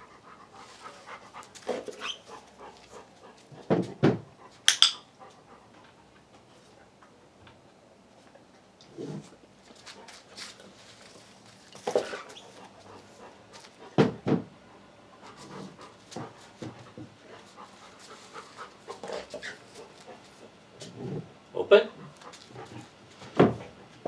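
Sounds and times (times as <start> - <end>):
dog panting: 0.0 - 7.0, 11.8 - 21.0, 21.9 - 23.0.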